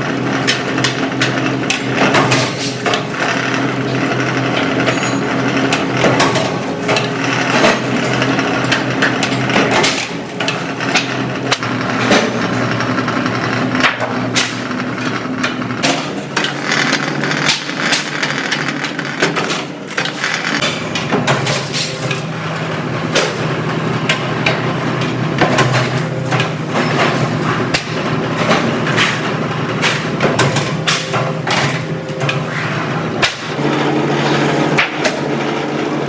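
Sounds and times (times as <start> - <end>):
steady machine hum: 0.0 - 25.4.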